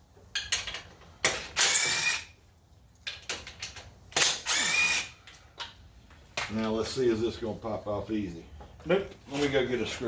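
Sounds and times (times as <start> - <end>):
power drill whining: 1.6 - 2.3, 4.2 - 5.2.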